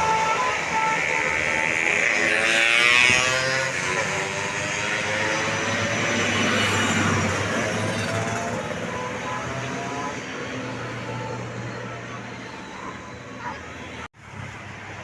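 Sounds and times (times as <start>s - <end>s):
bus driving past: 0.0s - 15.0s.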